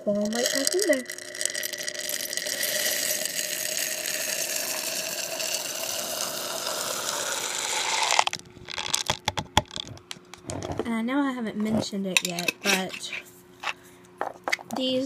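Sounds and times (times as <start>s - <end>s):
beads pouring into a bottle: 0.0s - 9.8s
single beads clicking: 0.1s - 10.4s.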